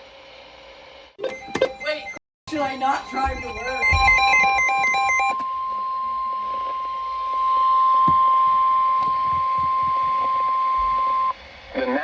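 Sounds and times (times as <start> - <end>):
emergency alert tone: 1.2 - 11.4
stepping higher beeps: 1.2 - 11.4.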